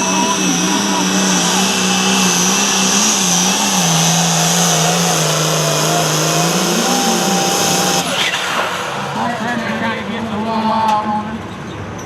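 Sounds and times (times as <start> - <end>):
tractor diesel engine revving: 0.0 - 11.7.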